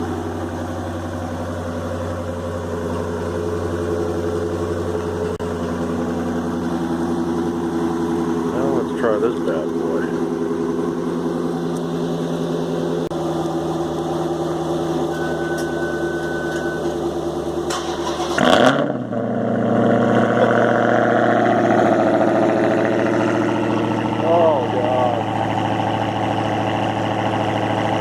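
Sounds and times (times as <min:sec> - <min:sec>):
car engine idling: 0:00.0 - 0:28.0
engine firing up loudly: 0:17.6 - 0:28.0.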